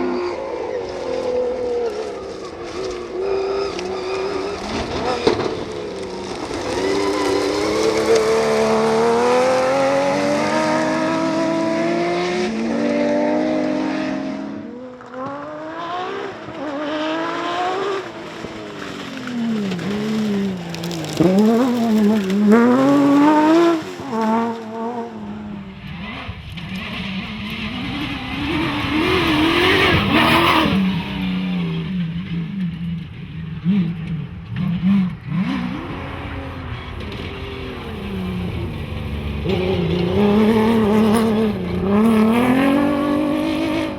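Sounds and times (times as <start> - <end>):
rally car engine revving: 0.0 - 43.9
tyre and stone noise: 16.4 - 25.2.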